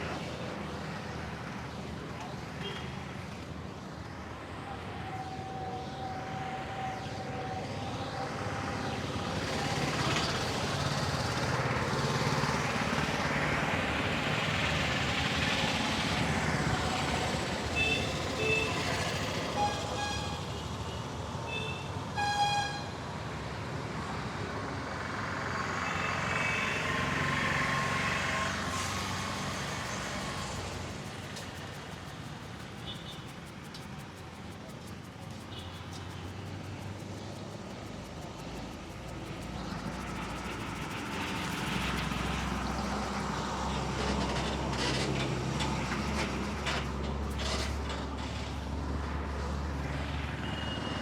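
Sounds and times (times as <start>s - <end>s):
road traffic passing: 0.0s - 51.0s
vehicle horn toots: 19.5s - 20.6s, 21.5s - 23.0s.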